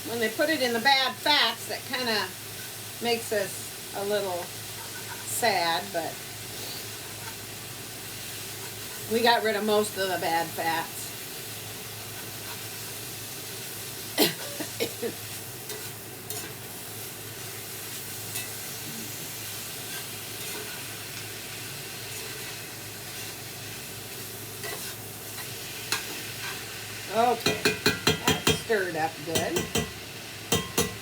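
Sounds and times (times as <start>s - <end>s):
food sizzling in a frying pan: 0.0s - 31.0s
utensil knocking against pan: 27.4s - 28.7s, 29.4s - 31.0s.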